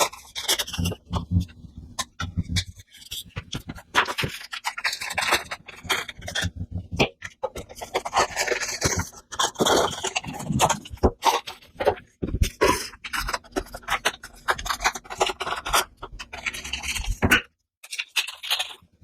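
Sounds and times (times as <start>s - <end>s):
packaging rustling and scraping: 0.0s - 19.0s.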